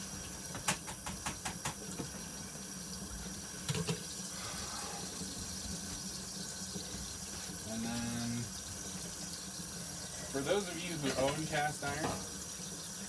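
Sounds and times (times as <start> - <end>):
tap running into sink: 0.4 - 2.2, 3.6 - 4.1, 10.9 - 12.4.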